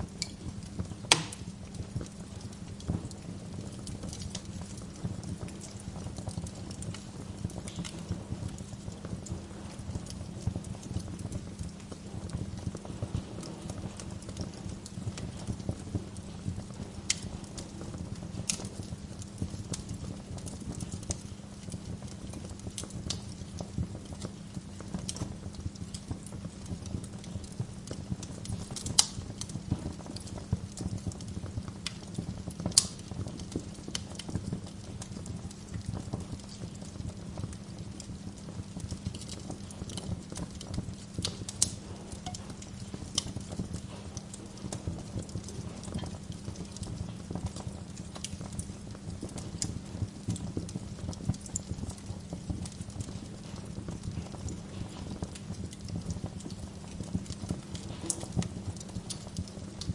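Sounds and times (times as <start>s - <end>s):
wood fire crackling: 0.0s - 59.9s
logs popping: 1.0s - 1.6s.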